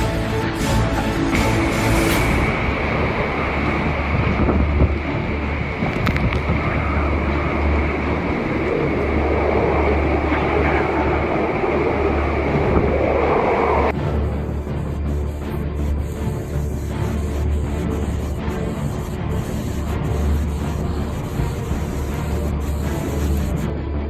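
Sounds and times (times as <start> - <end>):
rushing and rumbling noise: 0.0 - 24.0
wind buffeting microphone: 1.6 - 14.0.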